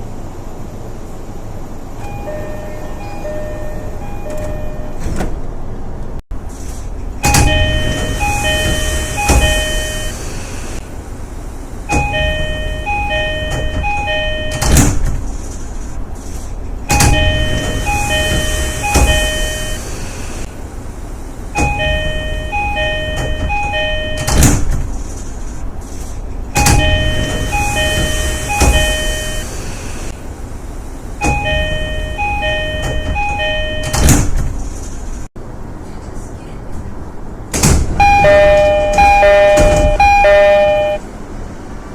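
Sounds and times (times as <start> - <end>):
sliding doors: 0.0 - 35.7, 36.8 - 41.9
two-note train door chime: 2.0 - 5.2, 7.2 - 10.4, 11.9 - 15.0, 16.9 - 20.0, 21.6 - 24.7, 26.6 - 29.7, 31.2 - 34.3, 38.0 - 41.0
heavy door thud: 37.6 - 41.0.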